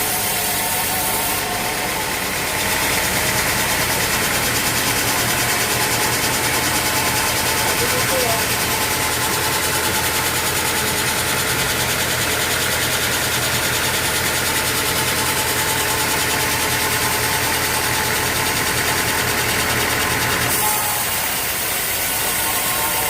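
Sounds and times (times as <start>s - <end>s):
sawmill machinery running: 0.0s - 23.0s.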